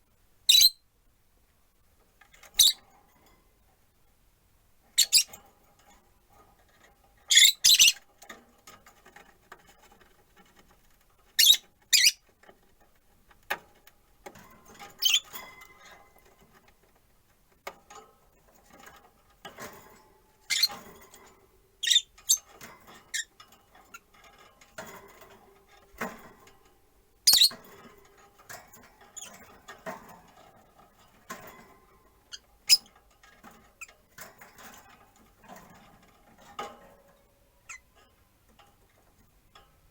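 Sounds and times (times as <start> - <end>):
lovebirds chirping: 0.5 - 0.8, 21.8 - 22.4, 27.3 - 27.5
soft bird chatter: 7.3 - 8.1, 21.8 - 22.5, 27.3 - 27.6.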